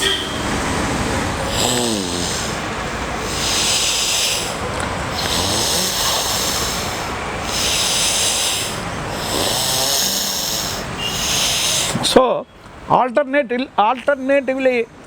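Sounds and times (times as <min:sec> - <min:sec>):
person breathing deeply through nose: 0:01.4 - 0:12.2.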